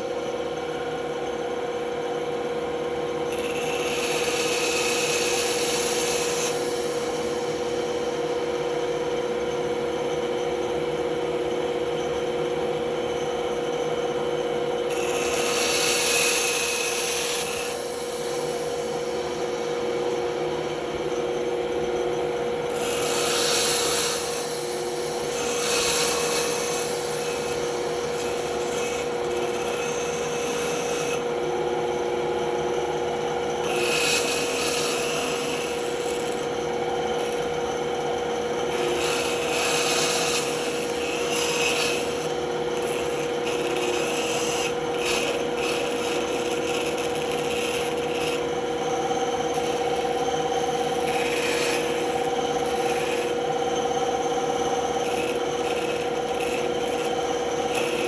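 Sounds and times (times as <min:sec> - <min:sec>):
band saw humming: 0:03.0 - 0:58.0
saw blade cutting wood: 0:03.3 - 0:07.3, 0:14.9 - 0:18.8, 0:22.7 - 0:31.2, 0:33.6 - 0:58.0.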